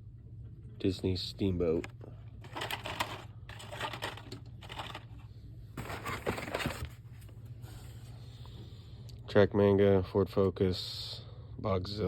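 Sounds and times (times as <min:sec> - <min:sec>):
plastic blister packs clicking: 0:02.4 - 0:05.0
card rustling: 0:02.4 - 0:07.4.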